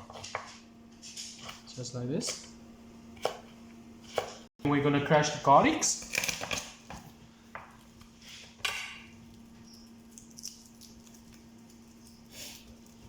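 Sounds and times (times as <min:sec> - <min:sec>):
knife crushing garlic on board: 0:03.2 - 0:04.4.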